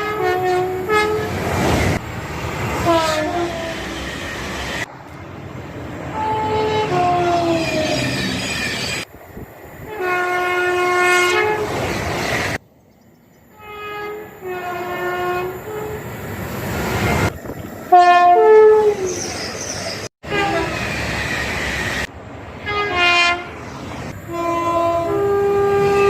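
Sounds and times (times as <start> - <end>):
two-tone train horn blasts: 0.0 - 1.5, 2.8 - 4.0, 6.1 - 7.9, 9.9 - 11.8, 13.5 - 16.1, 17.9 - 19.1, 20.2 - 20.8, 22.6 - 23.6, 24.2 - 26.0.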